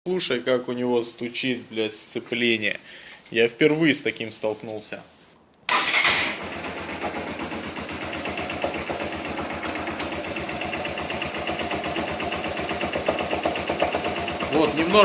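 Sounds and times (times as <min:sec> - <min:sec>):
clutch knocking: 0:05.7 - 0:15.0
motorcycle engine idling: 0:05.7 - 0:15.0.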